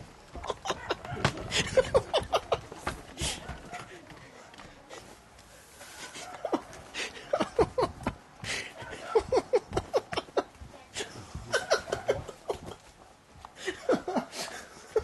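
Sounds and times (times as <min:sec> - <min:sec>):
person laughing: 0:00.3 - 0:02.8, 0:06.2 - 0:12.9, 0:13.6 - 0:15.0
gasping in-breaths: 0:08.4 - 0:08.9.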